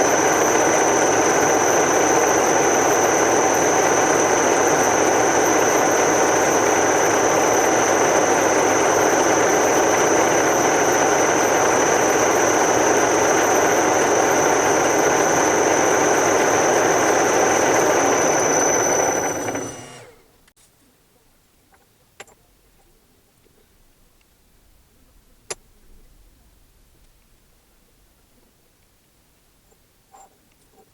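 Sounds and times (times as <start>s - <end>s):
milling machine whining: 0.0s - 20.3s.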